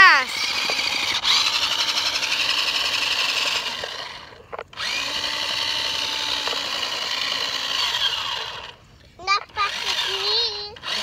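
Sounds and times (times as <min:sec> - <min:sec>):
toy car electric motor whining: 0:00.0 - 0:11.0.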